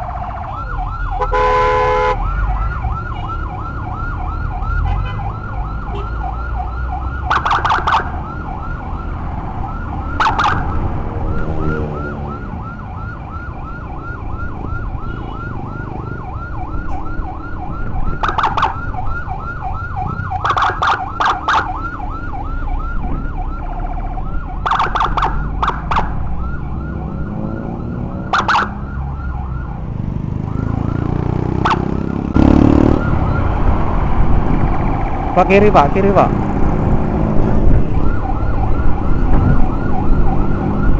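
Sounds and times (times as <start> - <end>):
ambulance siren yelp: 0.0 - 40.9
road noise: 0.0 - 40.9
motorcycle engine: 25.8 - 35.4, 36.2 - 40.9.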